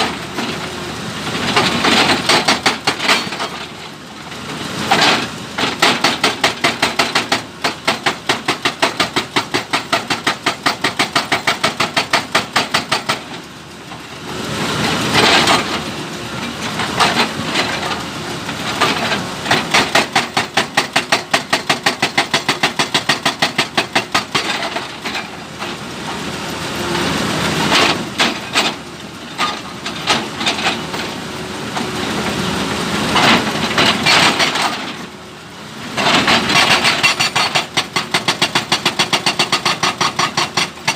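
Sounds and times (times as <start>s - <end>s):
diesel engine running: 0.0s - 40.9s
hydraulic breaker hammering stone: 1.5s - 3.6s, 4.9s - 13.3s, 18.7s - 25.3s, 33.1s - 35.0s, 36.0s - 40.9s.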